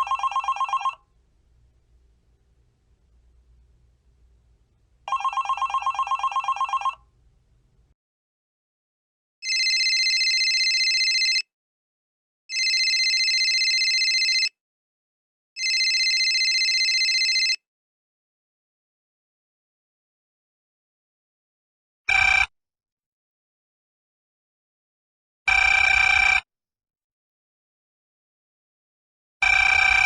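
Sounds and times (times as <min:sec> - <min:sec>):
electronic phone ring: 0:00.0 - 0:01.0, 0:05.1 - 0:07.0, 0:09.4 - 0:11.5, 0:12.5 - 0:14.6, 0:15.6 - 0:17.6, 0:29.4 - 0:30.0
trilling telephone ring: 0:00.0 - 0:01.0, 0:05.1 - 0:07.0, 0:09.4 - 0:11.4, 0:12.5 - 0:14.5, 0:15.6 - 0:17.6.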